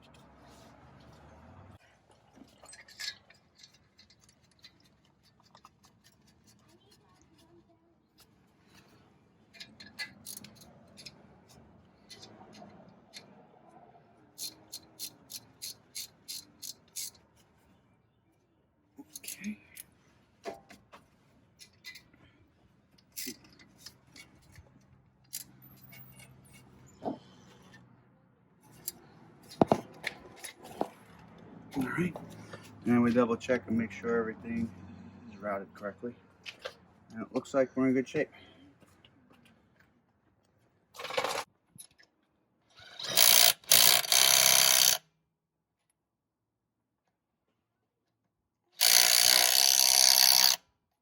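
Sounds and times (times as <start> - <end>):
hand tools clicking and clinking: 2.2 - 7.0, 9.5 - 13.4, 14.4 - 17.2, 19.0 - 19.9, 21.6 - 22.2, 22.9 - 26.9, 28.6 - 32.8
handheld power tool bursts: 42.8 - 45.0, 48.8 - 50.6.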